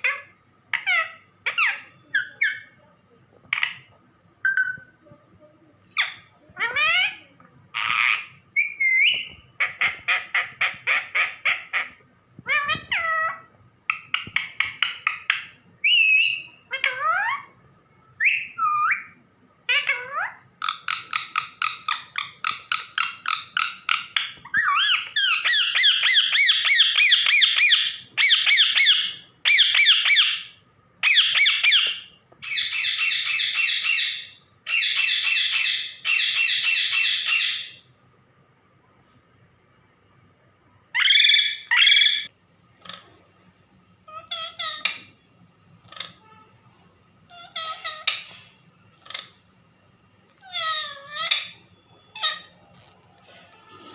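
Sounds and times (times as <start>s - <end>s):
parrot whistling and squawking: 7.8s - 17.5s, 18.2s - 37.8s, 40.9s - 43.0s, 44.1s - 45.1s, 47.3s - 49.4s, 50.4s - 52.9s.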